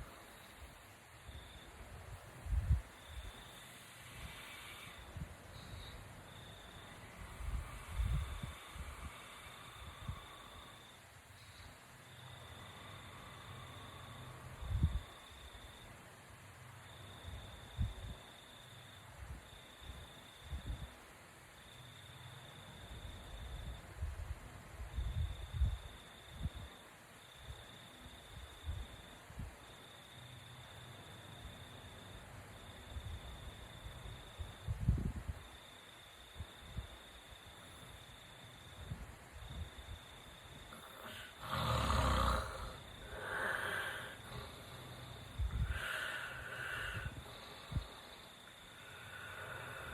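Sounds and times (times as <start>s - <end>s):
insects trilling: 2.4s - 16.0s, 35.4s - 49.9s
faint breathing of sleeper: 2.5s - 15.9s, 40.6s - 49.9s.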